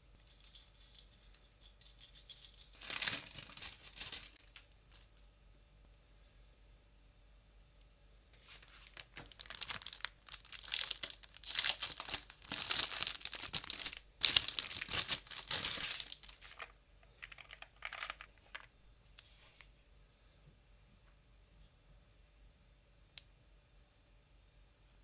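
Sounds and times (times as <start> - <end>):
packaging crinkling and tearing: 2.6 - 4.6, 8.4 - 16.7.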